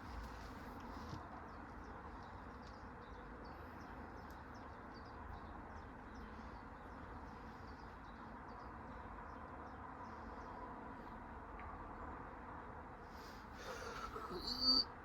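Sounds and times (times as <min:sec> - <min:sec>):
faint outdoor background hiss: 0:00.0 - 0:15.0
small birds chirping: 0:13.6 - 0:15.0.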